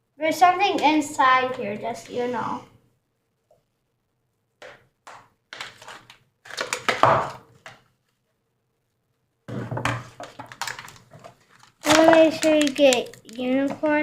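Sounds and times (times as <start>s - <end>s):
toy packaging knocks and rustles: 5.6s - 7.8s, 9.5s - 13.8s.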